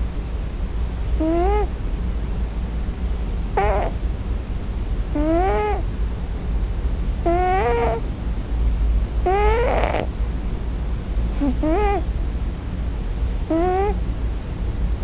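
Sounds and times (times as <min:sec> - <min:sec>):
kitten meowing: 0:01.2 - 0:01.7, 0:03.6 - 0:04.0, 0:05.2 - 0:05.8, 0:07.3 - 0:08.0, 0:09.3 - 0:10.1, 0:11.4 - 0:12.0, 0:13.5 - 0:14.0.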